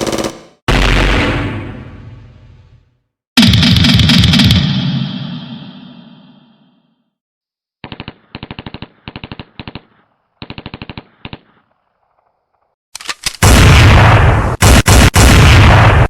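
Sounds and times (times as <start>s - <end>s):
automatic gunfire bursts: 0.0s - 0.5s, 7.8s - 11.6s.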